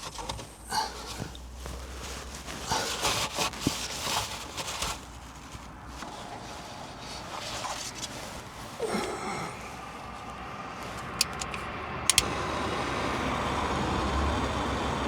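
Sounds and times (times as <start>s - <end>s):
rubbing and scraping handling noises: 0.0s - 12.2s
light clicks: 11.0s - 12.4s.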